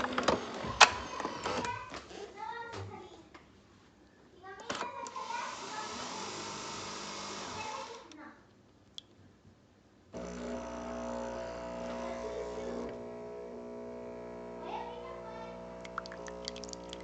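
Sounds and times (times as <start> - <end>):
water dripping: 8.9 - 9.2, 15.8 - 17.0
coffee machine motor hum: 10.2 - 17.0.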